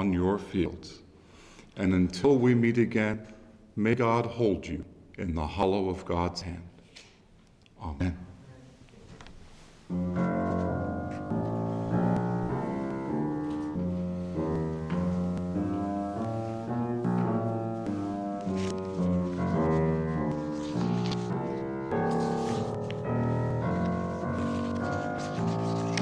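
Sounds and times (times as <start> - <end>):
keyboard music with held chords: 9.9 - 26.0.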